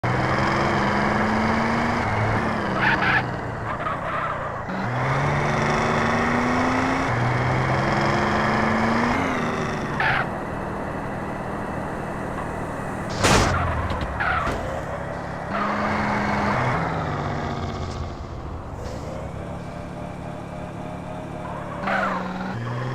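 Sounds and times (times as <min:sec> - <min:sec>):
sharp crack: 0:13.1 - 0:14.9.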